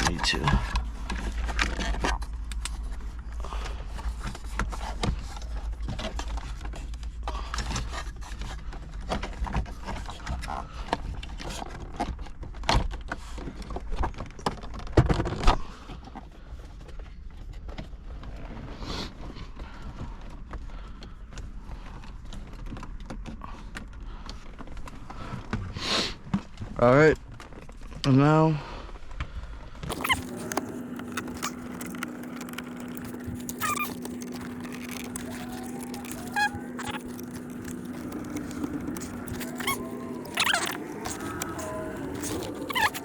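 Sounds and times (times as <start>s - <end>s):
clicks and knocks of plastic: 29.9s - 43.0s.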